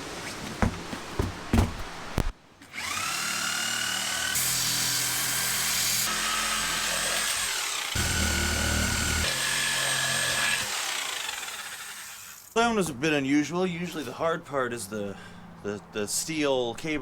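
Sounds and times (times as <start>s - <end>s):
power tool cutting rubber: 2.7s - 12.6s.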